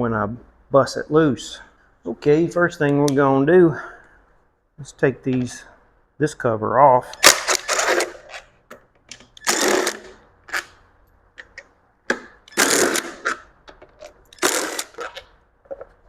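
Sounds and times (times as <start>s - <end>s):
cordless power tool whirring: 14.4s - 15.2s.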